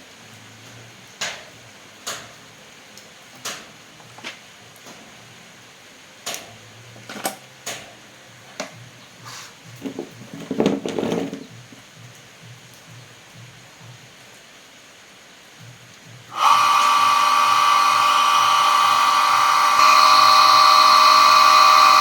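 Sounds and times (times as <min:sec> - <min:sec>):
hard objects clicking and knocking: 0:09.8 - 0:11.5
rattling clatter: 0:09.8 - 0:11.5.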